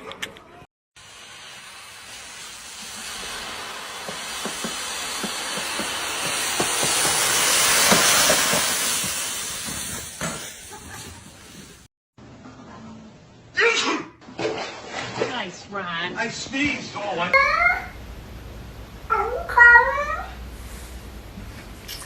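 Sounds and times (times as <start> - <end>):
hissing noise: 1.0 - 11.9.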